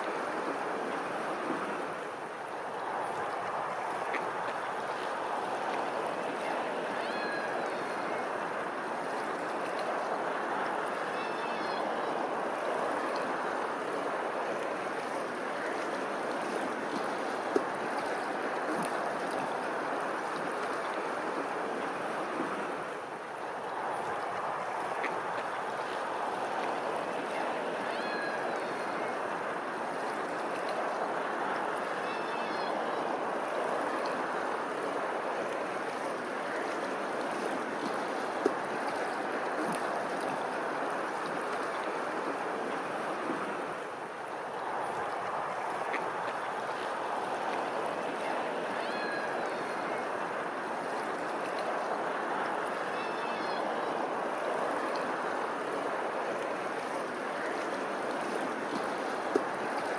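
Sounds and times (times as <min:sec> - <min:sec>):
running water rushing: 0:00.0 - 0:59.9.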